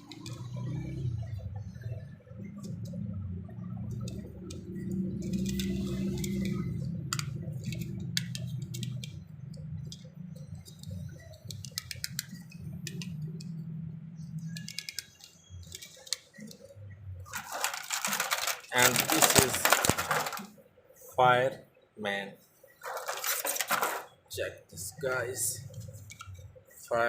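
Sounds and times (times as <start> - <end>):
toy cars and packaging clicking: 0.0 - 1.0, 3.9 - 9.2, 9.8 - 13.5, 14.4 - 16.6, 17.3 - 20.5, 22.8 - 24.1
steady low hum: 0.0 - 23.1.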